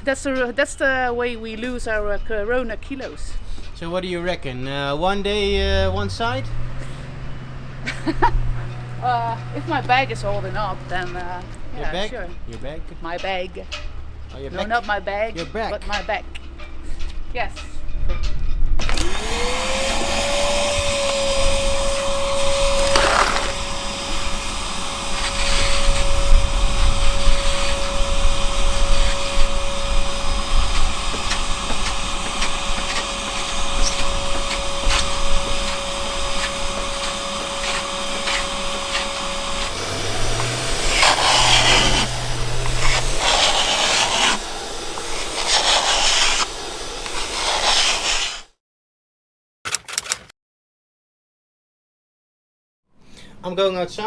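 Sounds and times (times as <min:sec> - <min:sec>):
vacuum cleaner whine: 0:18.9 - 0:48.5
scraper blade stripping paint: 0:22.7 - 0:23.6, 0:30.6 - 0:48.5.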